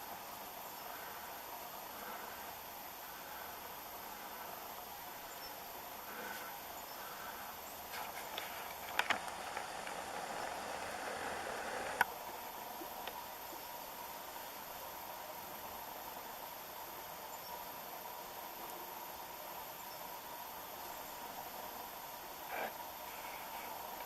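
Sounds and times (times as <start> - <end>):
steady outdoor hiss: 0.0 - 24.0.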